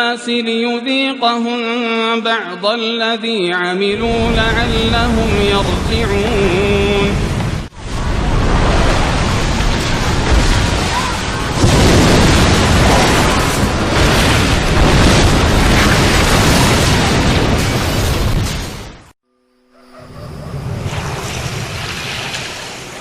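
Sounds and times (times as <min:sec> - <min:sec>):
heavy surf rushing: 0:04.0 - 0:19.0.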